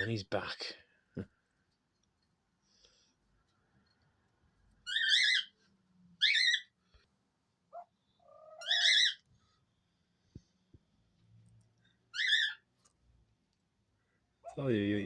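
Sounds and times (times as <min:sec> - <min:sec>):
bird chirping calls: 0:04.8 - 0:05.6, 0:06.2 - 0:06.8, 0:07.7 - 0:09.3, 0:12.1 - 0:12.7.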